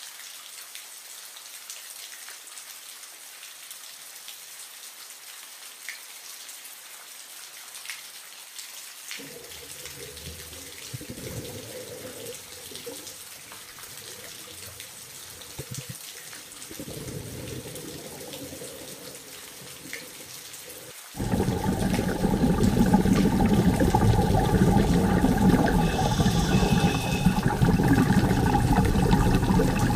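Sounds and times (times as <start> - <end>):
running splashing water: 9.2 - 29.9.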